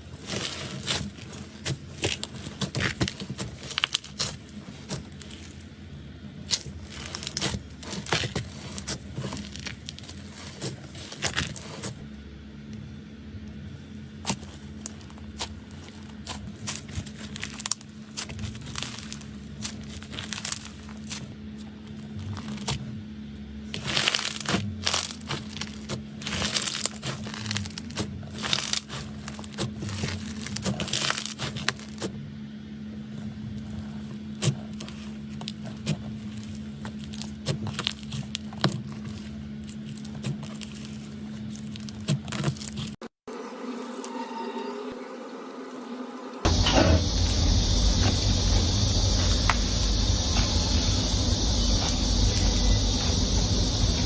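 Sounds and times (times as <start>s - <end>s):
slime crackling and popping: 0.2s - 5.7s, 6.4s - 11.8s, 14.2s - 21.2s, 23.8s - 32.1s.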